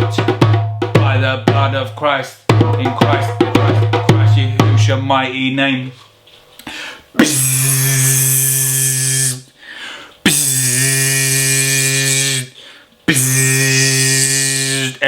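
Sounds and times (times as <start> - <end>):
low buzzing horn blasts: 13.1 - 15.0.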